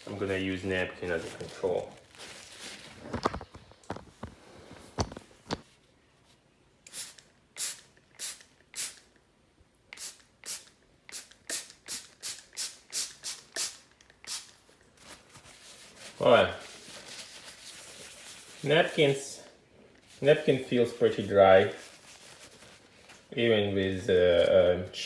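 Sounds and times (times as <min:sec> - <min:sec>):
spray bottle squirting water: 0:06.9 - 0:09.1, 0:09.9 - 0:14.6.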